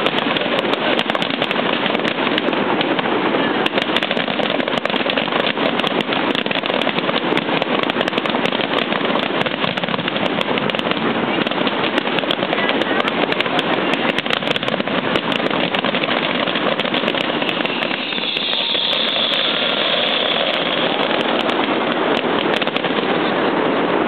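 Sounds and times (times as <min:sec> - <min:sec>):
fireworks crackling: 0:00.0 - 0:24.0
high hiss: 0:13.7 - 0:23.6.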